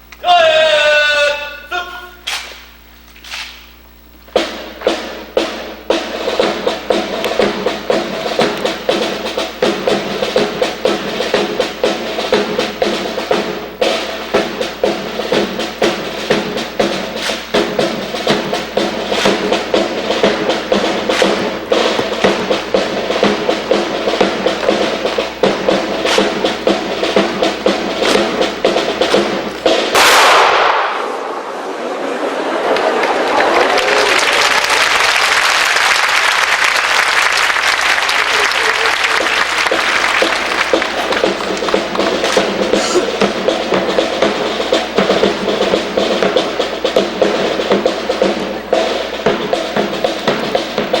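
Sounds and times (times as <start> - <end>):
applause: 32.6 - 42.4.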